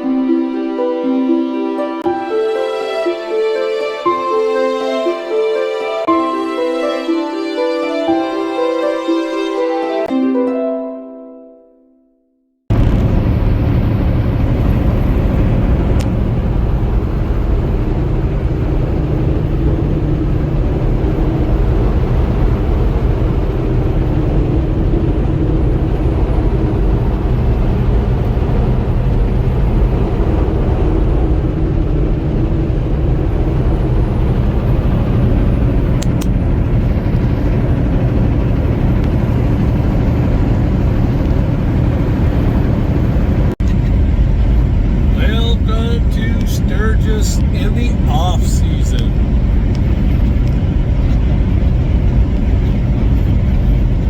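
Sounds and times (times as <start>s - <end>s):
vehicle driving at highway speed: 12.7s - 54.0s.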